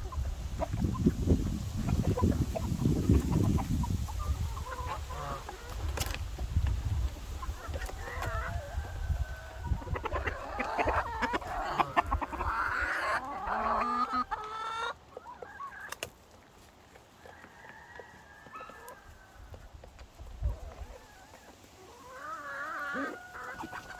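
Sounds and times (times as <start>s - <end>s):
chickens clucking: 0.0s - 23.9s
faint drawn-out chicken call: 7.5s - 16.0s, 17.0s - 19.8s, 20.4s - 23.9s.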